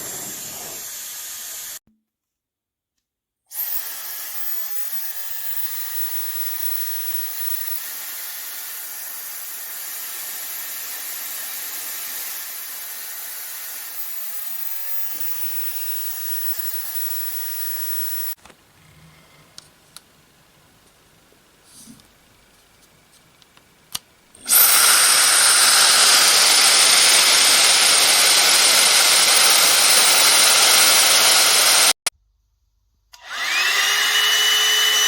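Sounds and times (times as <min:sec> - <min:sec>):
hair dryer running: 0:00.0 - 0:01.8, 0:24.4 - 0:32.0, 0:33.2 - 0:35.0.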